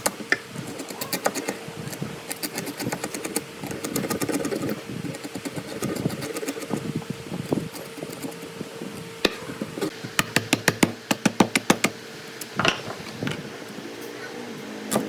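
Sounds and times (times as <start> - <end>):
steady machine hum: 0.0 - 15.0.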